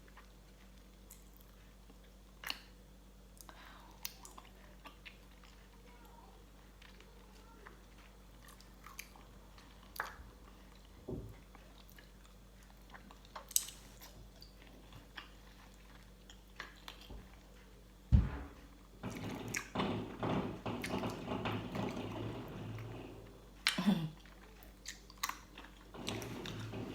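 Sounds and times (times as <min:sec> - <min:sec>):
person chewing and crunching food: 0:00.0 - 0:18.0, 0:23.6 - 0:26.0
loud knock: 0:18.1 - 0:23.3, 0:26.0 - 0:26.9.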